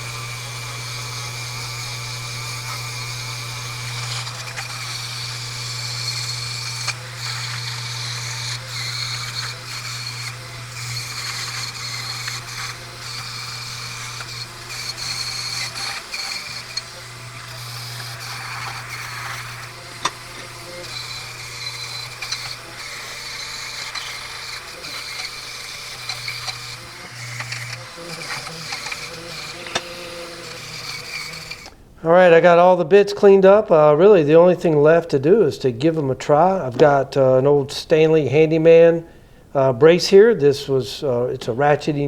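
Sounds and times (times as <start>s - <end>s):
scratchy rubbing: 0.0s - 31.7s
motor hum: 0.0s - 31.9s.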